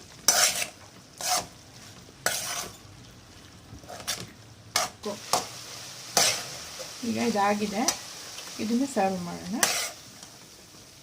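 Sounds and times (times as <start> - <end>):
faint sizzle: 0.0 - 11.0
utensil scraping pan: 0.3 - 1.6, 2.2 - 2.8, 6.2 - 6.9, 9.4 - 10.0.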